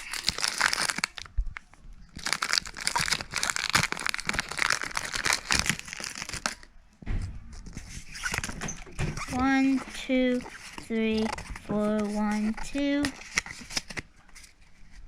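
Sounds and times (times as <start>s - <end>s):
foil wrapper crinkling and tearing: 0.0s - 6.7s, 9.7s - 14.6s.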